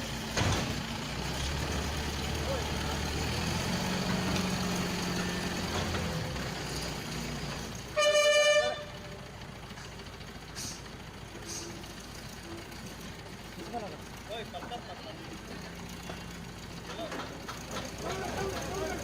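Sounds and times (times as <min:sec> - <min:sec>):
heavy vehicle engine running: 0:00.0 - 0:19.0
loud horn blast: 0:07.9 - 0:09.0.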